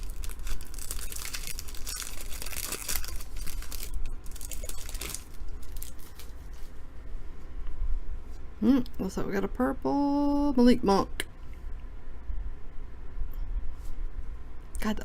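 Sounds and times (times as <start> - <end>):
plastic foil wrapper crinkling: 0.0 - 6.7.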